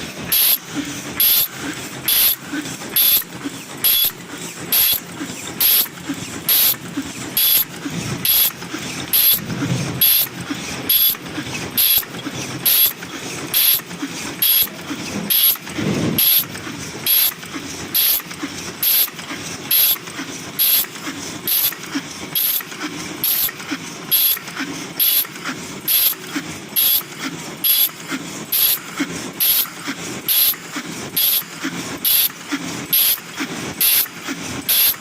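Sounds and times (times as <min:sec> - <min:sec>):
short sharp machine burst: 0:00.3 - 0:04.1, 0:07.4 - 0:18.2.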